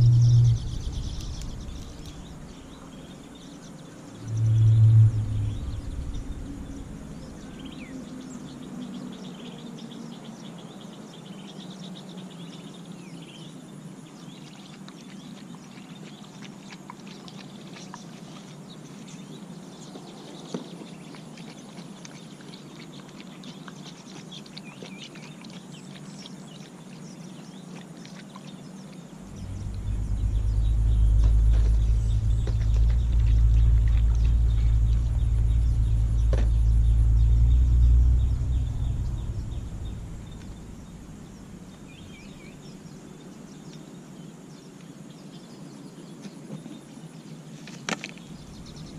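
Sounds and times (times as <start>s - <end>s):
loud low rumble: 0.0s - 3.5s, 4.1s - 8.6s, 29.2s - 43.0s, 48.3s - 48.9s
steady low hum: 0.0s - 8.8s, 29.1s - 43.3s, 48.3s - 48.9s
birds chirping: 0.0s - 13.6s, 14.2s - 48.9s.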